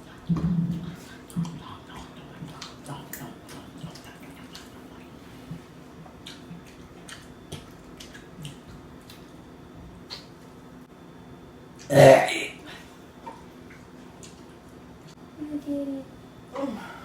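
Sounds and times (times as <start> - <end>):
chewing and lip-smacking: 0.0 - 10.6, 13.2 - 15.2
wet mouth clicks: 0.7 - 5.0, 6.2 - 9.2, 10.0 - 10.4.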